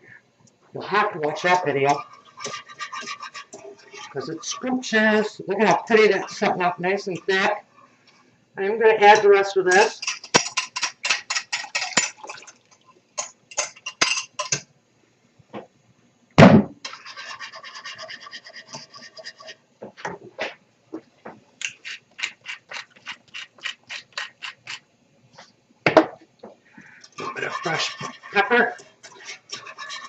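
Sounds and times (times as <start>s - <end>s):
utensil scraping while stirring pot: 1.2s - 7.9s, 9.7s - 14.6s, 16.8s - 19.6s, 21.6s - 24.8s, 26.9s - 30.0s
loud knock: 16.4s - 16.8s.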